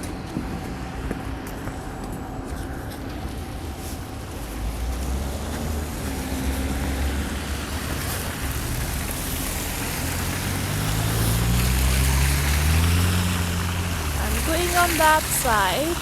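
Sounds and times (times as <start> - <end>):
vehicle engine humming: 0.0 - 16.0
tyres hissing on wet snow: 4.6 - 16.0.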